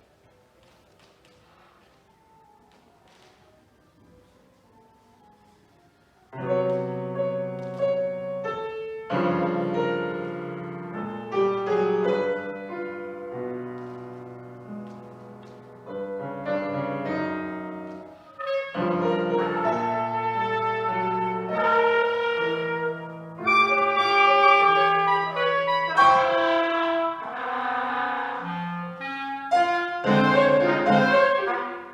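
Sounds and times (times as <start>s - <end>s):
loud piano chords: 6.2s - 31.9s
sustained brass tones: 8.2s - 31.9s.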